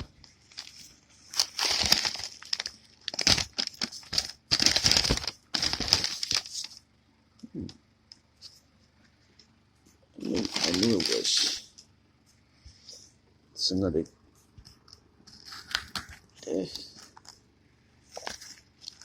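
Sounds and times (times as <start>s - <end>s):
packaging crinkling and tearing: 0.0s - 6.8s, 10.2s - 11.7s, 15.3s - 16.2s, 18.2s - 19.0s.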